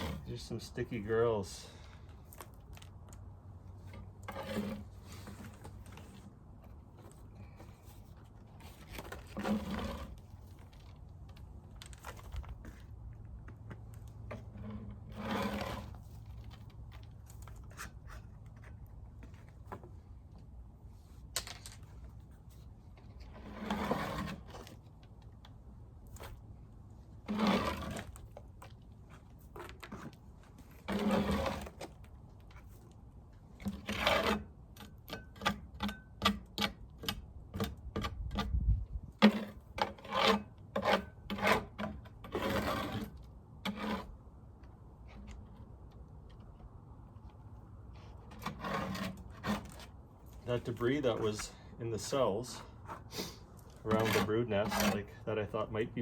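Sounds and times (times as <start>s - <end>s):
scraping beehive board: 3.9s - 6.3s, 7.0s - 11.0s, 14.2s - 18.8s, 23.1s - 24.8s, 27.2s - 32.0s, 33.6s - 36.8s, 39.2s - 44.2s, 48.0s - 55.7s.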